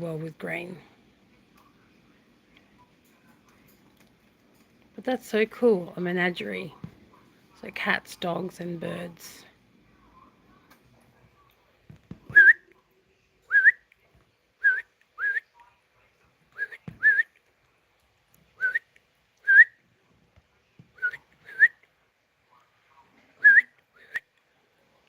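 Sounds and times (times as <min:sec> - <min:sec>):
parrot whistling: 0:12.3 - 0:12.7, 0:13.5 - 0:13.8, 0:14.6 - 0:15.5, 0:16.6 - 0:17.3, 0:18.6 - 0:19.8, 0:21.0 - 0:21.8, 0:23.4 - 0:24.3.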